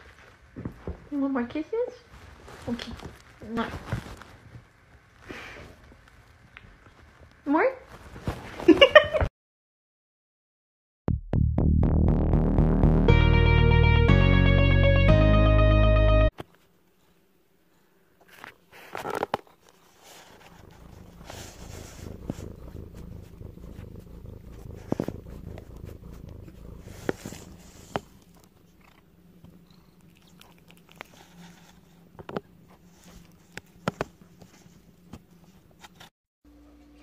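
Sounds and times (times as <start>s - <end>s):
cat purring: 2.0s - 8.7s, 18.3s - 36.0s.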